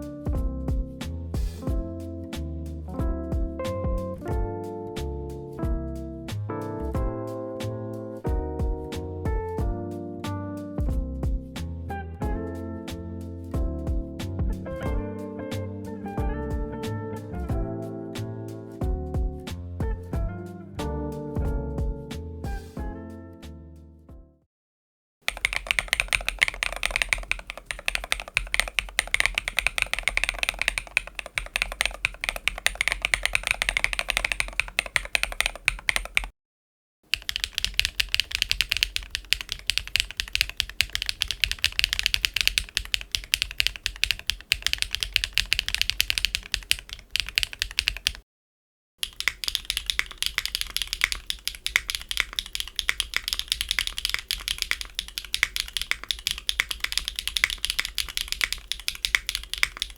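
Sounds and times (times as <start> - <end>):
fast typing on mechanical keyboard: 25.3 - 36.3, 37.1 - 48.2, 49.0 - 59.9.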